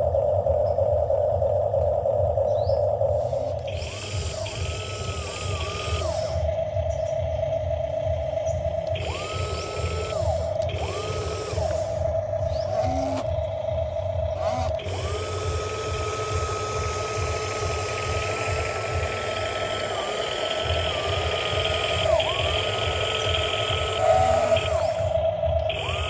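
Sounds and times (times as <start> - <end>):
toy electric motors whining: 0.0 - 26.0
low rumble: 6.4 - 19.7.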